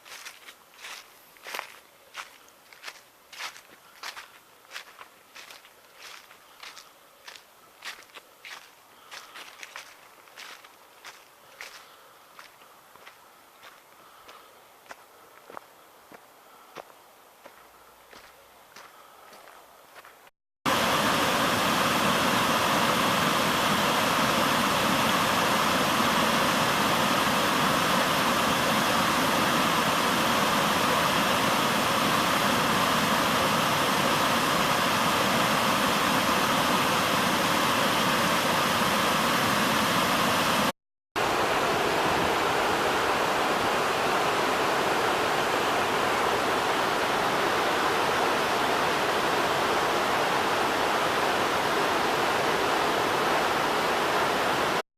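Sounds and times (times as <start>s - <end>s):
waterfall rushing: 20.7s - 54.8s.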